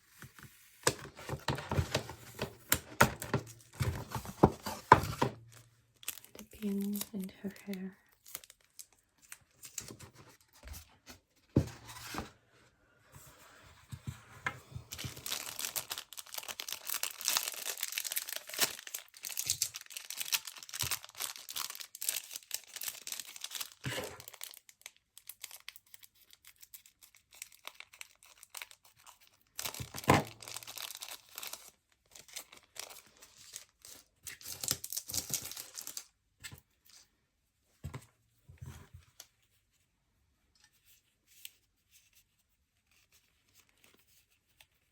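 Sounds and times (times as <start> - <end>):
packaging crinkling and tearing: 1.1 - 10.4, 14.8 - 36.1.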